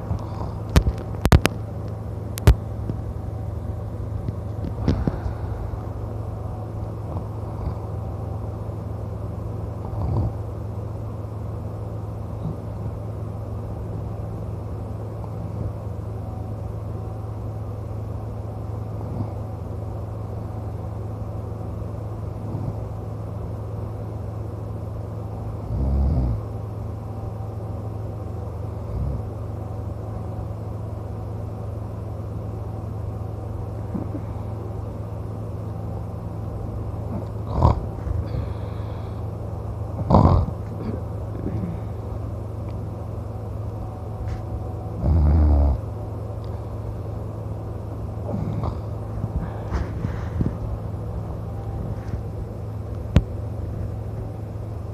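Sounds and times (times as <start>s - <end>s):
low hum: 0.0s - 54.9s
man snoring: 7.1s - 8.1s, 9.8s - 10.5s, 22.4s - 22.8s, 25.6s - 26.5s, 37.1s - 39.1s, 40.0s - 41.9s, 45.0s - 45.9s, 48.2s - 49.0s.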